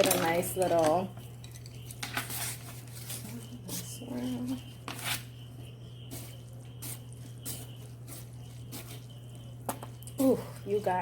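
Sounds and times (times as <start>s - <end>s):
steady low hum: 0.0s - 11.0s
soft wet squishes of noodles: 6.1s - 10.2s.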